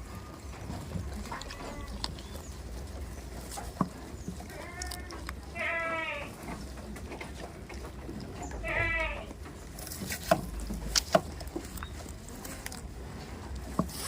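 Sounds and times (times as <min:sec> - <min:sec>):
goat bleating: 0:01.2 - 0:02.3, 0:04.5 - 0:06.6, 0:08.5 - 0:09.4.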